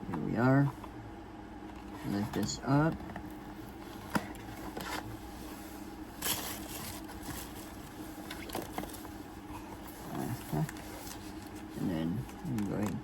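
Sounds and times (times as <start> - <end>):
packaging rustling scrape: 3.2 - 12.5.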